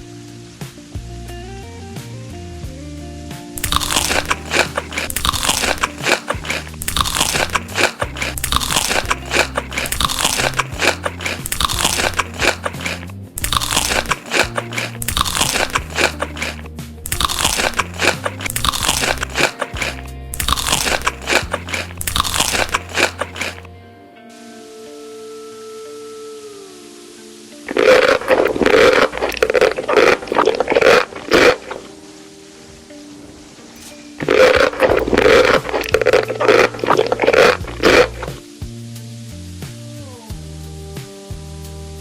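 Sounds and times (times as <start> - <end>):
crunching and chewing crisp food: 3.6 - 23.7, 27.7 - 32.0, 33.8 - 38.4.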